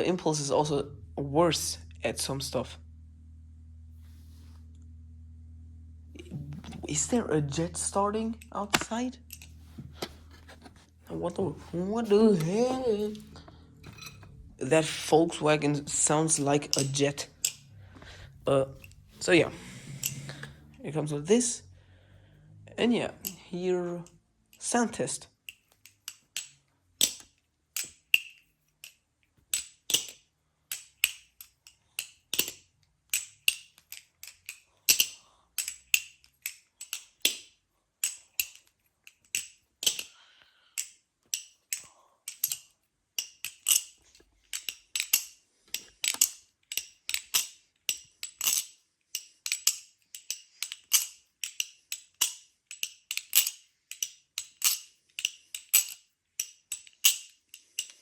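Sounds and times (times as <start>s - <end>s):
butterfly knife metal clicks: 44.5s - 58.0s.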